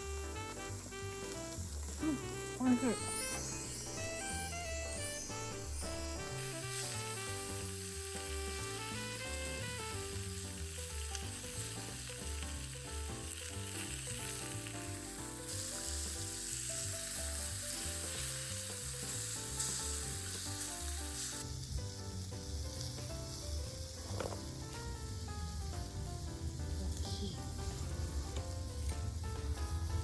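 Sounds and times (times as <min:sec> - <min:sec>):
background music: 0:00.0 - 0:30.0
food sizzling in a tin: 0:00.0 - 0:30.0.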